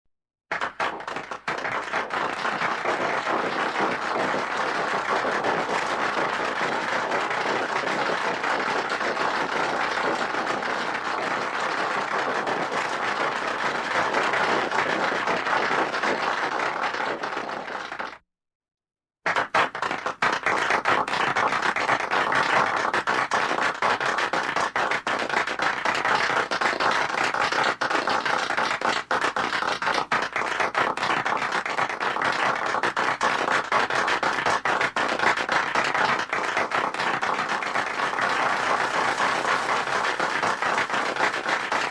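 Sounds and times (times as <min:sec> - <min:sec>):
crowd applause: 0:00.5 - 0:18.2, 0:30.1 - 0:41.9.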